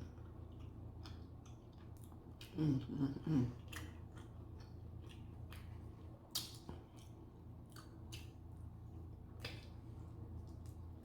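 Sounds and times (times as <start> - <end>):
low steady hum: 0.0 - 11.0
wet chewing mouth sounds: 0.2 - 8.4.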